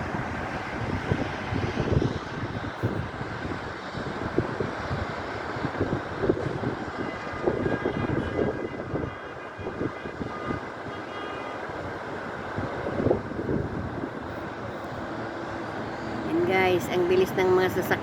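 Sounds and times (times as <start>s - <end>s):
wind buffeting the microphone: 0.0s - 11.0s, 11.7s - 18.0s
cars speeding past: 13.0s - 18.0s.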